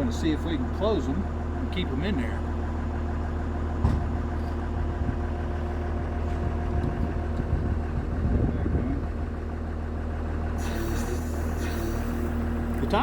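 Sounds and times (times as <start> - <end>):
engine idling: 0.0 - 13.0
knocks: 3.8 - 4.1.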